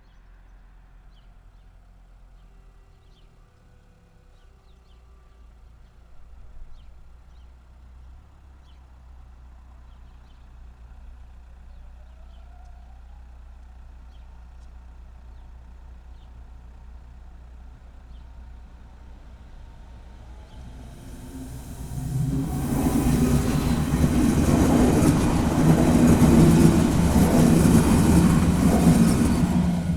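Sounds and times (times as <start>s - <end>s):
traffic idling rumble: 17.5s - 29.9s
approaching train: 18.0s - 29.9s.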